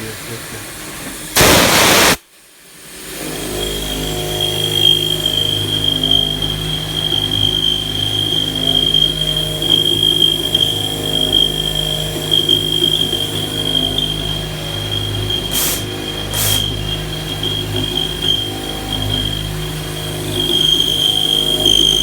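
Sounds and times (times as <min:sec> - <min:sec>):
high spindle whine: 0:01.4 - 0:02.2, 0:04.2 - 0:22.0
short bursts of noise: 0:01.4 - 0:02.2.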